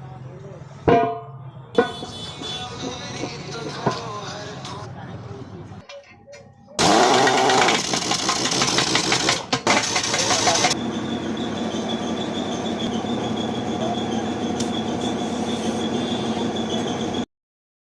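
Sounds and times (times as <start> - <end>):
machine grinding rush: 6.8 - 15.0
engine-like running: 6.8 - 17.2.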